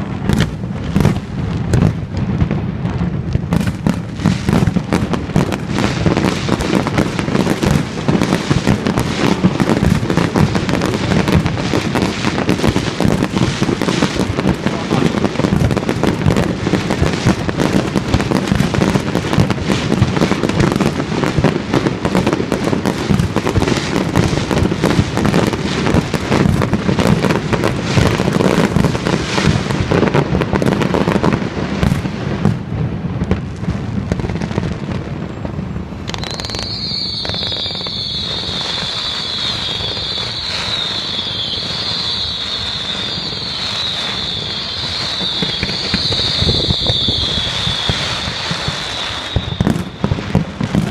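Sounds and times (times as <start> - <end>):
fireworks bangs and crackling: 0.0 - 50.9
high-pitched wavering whistle: 36.1 - 50.1.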